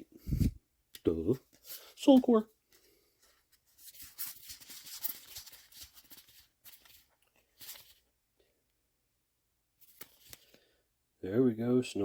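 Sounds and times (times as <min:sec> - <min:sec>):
wrapper rustling: 0:03.5 - 0:08.1, 0:09.8 - 0:10.6.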